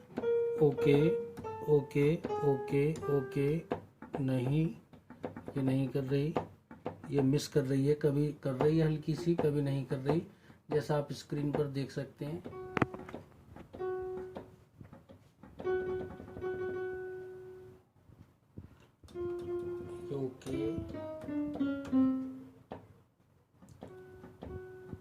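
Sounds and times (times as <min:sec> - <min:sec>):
piano notes from a keyboard: 0:00.0 - 0:04.7, 0:12.4 - 0:14.6, 0:15.6 - 0:17.8, 0:19.1 - 0:22.8, 0:23.8 - 0:25.0.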